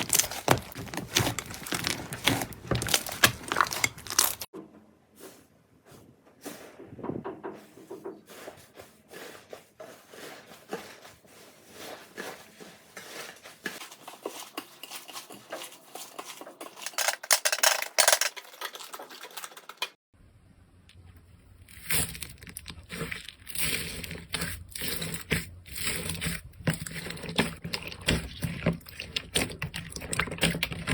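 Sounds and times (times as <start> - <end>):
slime popping and crackling: 0.0 - 4.5.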